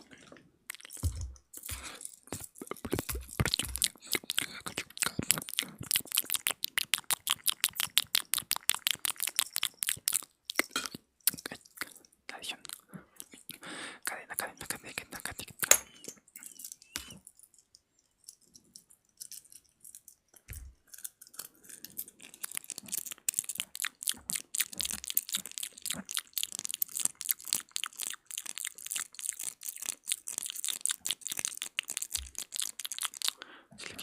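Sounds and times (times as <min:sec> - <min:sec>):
wet mouth clicks and smacks: 0:00.7 - 0:17.3, 0:22.3 - 0:33.4.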